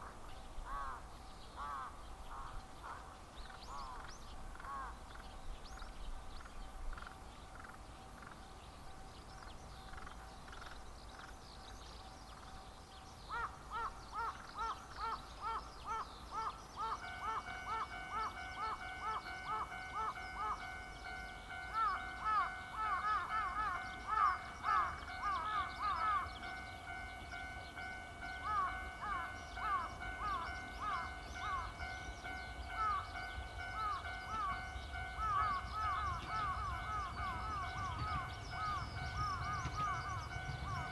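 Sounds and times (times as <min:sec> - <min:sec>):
level-crossing warning bell: 0:16.2 - 0:40.9
steady warning tones: 0:16.9 - 0:40.9.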